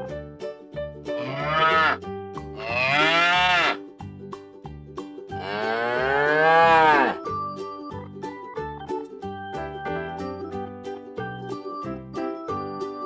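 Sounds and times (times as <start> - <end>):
music with plucked beat: 0.0 - 13.0
cow mooing: 1.2 - 2.0, 2.6 - 3.8, 5.4 - 7.2.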